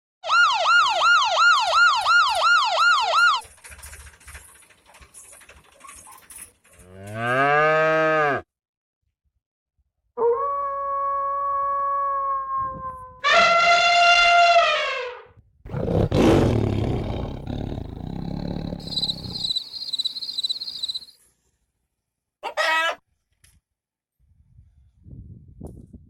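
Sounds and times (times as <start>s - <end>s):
fast warbling siren: 0.2s - 3.4s, 18.8s - 21.1s
cow mooing: 6.8s - 8.5s.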